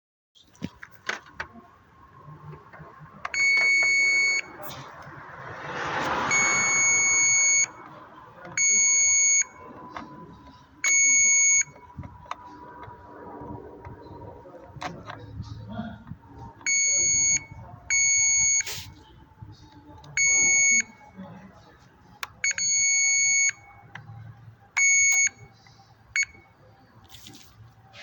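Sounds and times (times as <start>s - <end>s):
electronic beeper long beeps: 6.3s - 7.8s.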